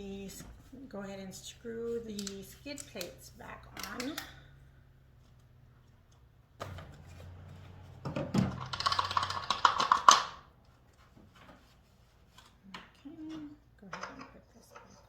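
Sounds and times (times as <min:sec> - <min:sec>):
objects clicking and rattling: 0:02.0 - 0:04.5, 0:08.1 - 0:10.5.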